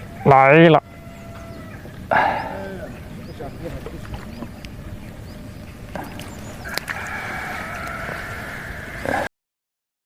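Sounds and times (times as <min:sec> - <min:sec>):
rooster crowing: 0:00.0 - 0:02.0, 0:06.4 - 0:09.3.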